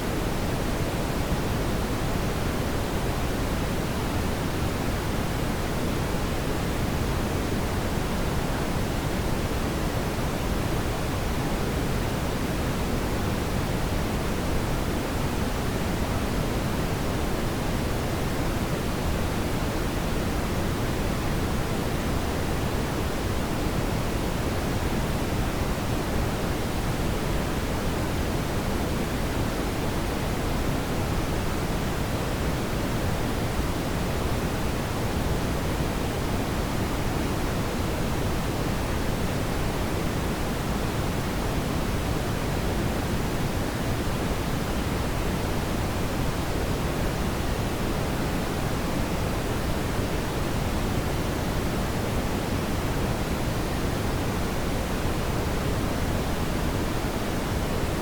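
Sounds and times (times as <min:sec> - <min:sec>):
brown noise hiss: 0:00.0 - 0:58.0.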